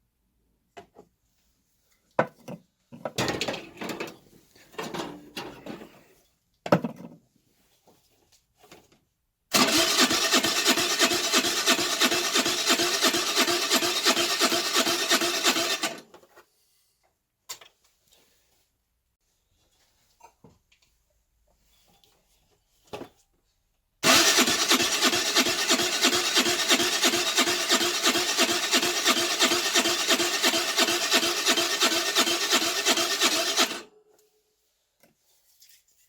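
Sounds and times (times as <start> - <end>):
scooter engine cranking: 9.5 - 16.1, 24.0 - 33.9.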